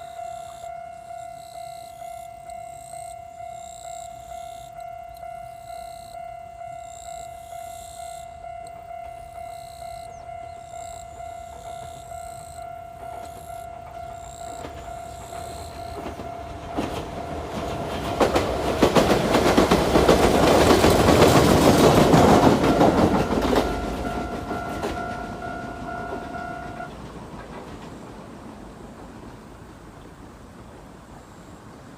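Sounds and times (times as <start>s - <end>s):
railroad crossing alarm ringing: 0.0s - 27.1s
train wheels clattering on rails: 5.0s - 30.8s.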